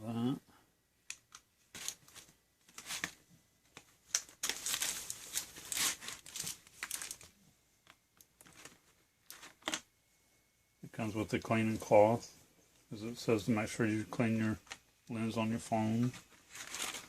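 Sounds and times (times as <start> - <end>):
packaging crinkling and rustling: 1.3 - 9.8, 16.0 - 17.0.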